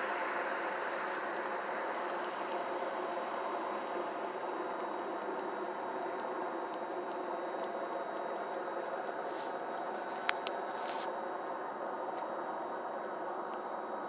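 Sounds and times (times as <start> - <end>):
vehicle hum and hiss: 0.0 - 14.0
faint ticks: 1.0 - 10.6.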